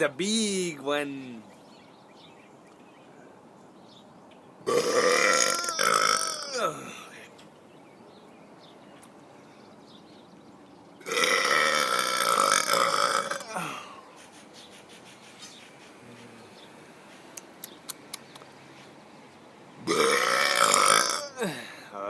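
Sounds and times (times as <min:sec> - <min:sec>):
man burping: 0:04.7 - 0:07.2, 0:11.0 - 0:14.0, 0:19.9 - 0:22.0.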